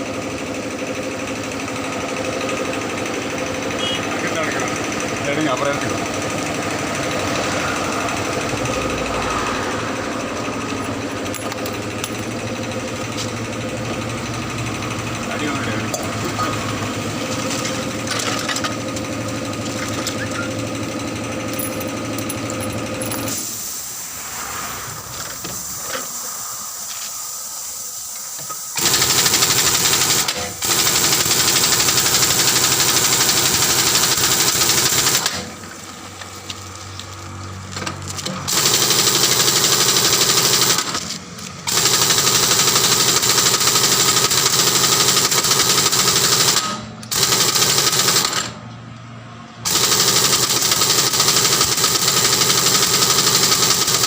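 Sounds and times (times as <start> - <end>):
steady machine hum: 0.0 - 37.7
air tool bursts: 23.2 - 35.6, 38.5 - 48.5, 49.6 - 54.0.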